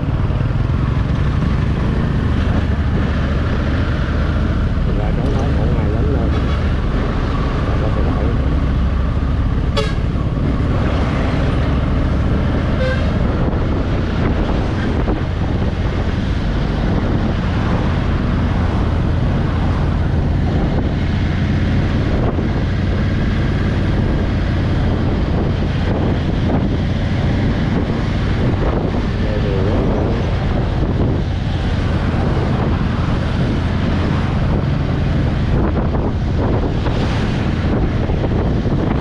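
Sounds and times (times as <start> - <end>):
motorcycle engine running: 0.0 - 39.0
horn toot: 9.7 - 10.2, 12.8 - 13.2.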